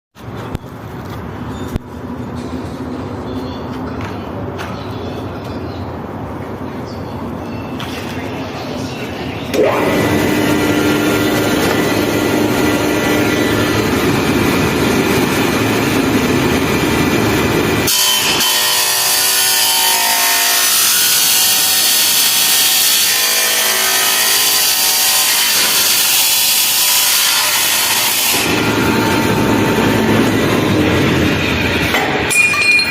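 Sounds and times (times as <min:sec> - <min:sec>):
angle grinder running: 0:09.6 - 0:31.9
grinder disc cutting metal: 0:09.6 - 0:32.9.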